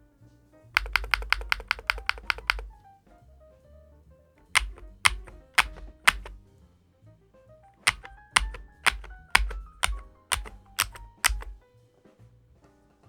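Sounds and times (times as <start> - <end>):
keyboard keys clacking: 0.8 - 2.8, 4.4 - 6.4, 7.8 - 11.6.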